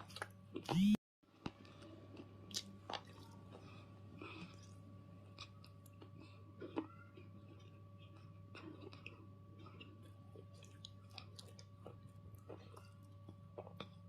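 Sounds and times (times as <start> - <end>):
crunching and chewing: 0.0 - 14.0
low electrical hum: 0.0 - 14.0.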